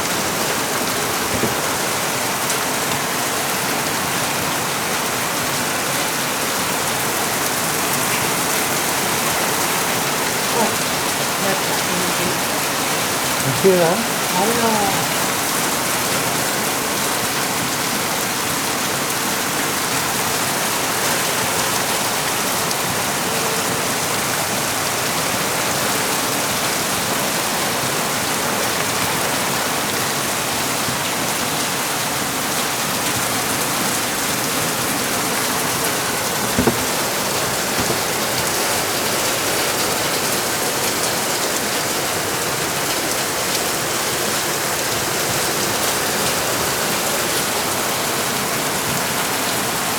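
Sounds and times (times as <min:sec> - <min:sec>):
heavy rain: 0:00.0 - 0:49.9
sharp knock: 0:36.6 - 0:37.0.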